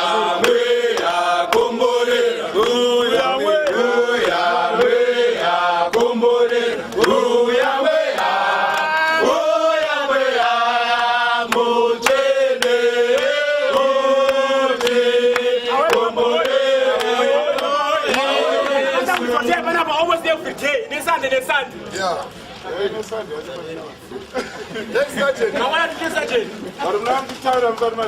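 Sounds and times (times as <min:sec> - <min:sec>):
crowd singing a chant: 0:00.0 - 0:20.6.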